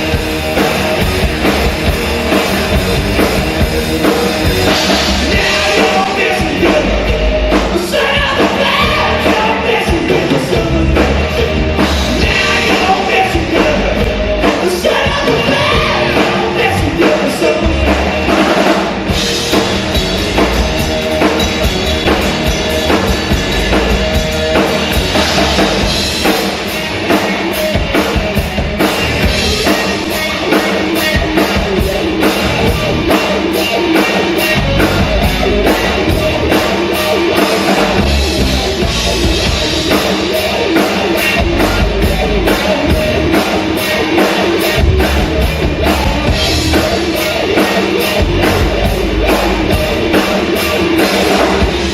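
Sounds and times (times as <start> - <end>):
drum kit beat: 0.0 - 51.9
electric guitar: 0.0 - 51.9
rock music: 0.0 - 51.9.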